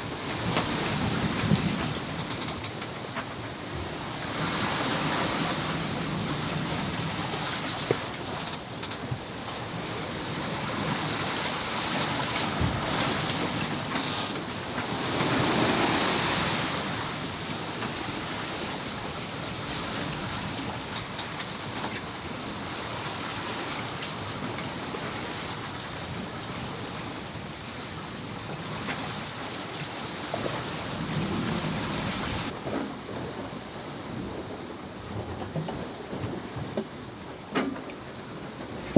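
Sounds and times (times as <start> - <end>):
waves rushing: 9.7 - 20.9.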